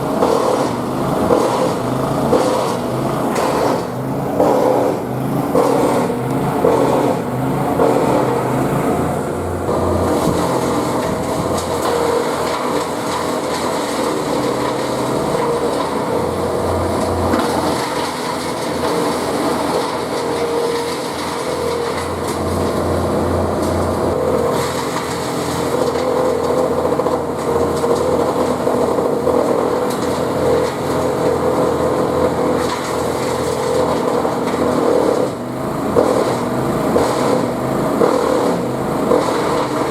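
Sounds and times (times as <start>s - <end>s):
wood chipper running: 0.0s - 39.9s.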